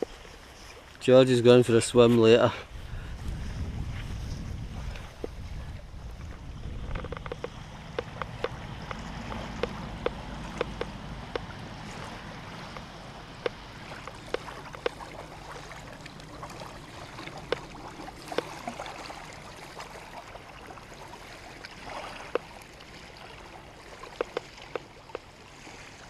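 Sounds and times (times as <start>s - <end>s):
small waves lapping shore: 0.0s - 26.0s
sharp plops and clicks: 7.0s - 11.5s, 12.7s - 16.6s, 24.1s - 25.3s.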